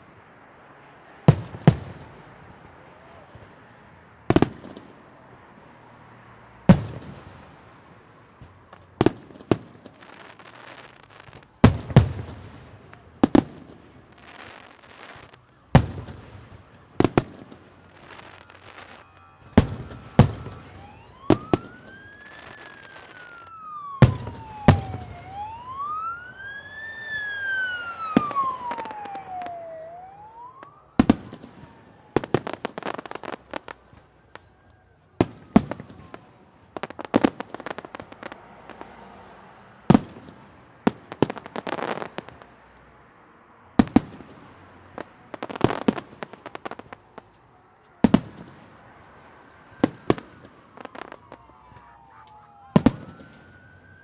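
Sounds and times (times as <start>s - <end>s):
fireworks crackling: 0.0s - 54.0s
fireworks bursting with bangs: 1.1s - 3.6s, 4.2s - 5.8s, 6.6s - 34.5s, 35.1s - 42.8s, 43.7s - 53.8s
siren wailing: 14.3s - 36.2s, 49.1s - 54.0s.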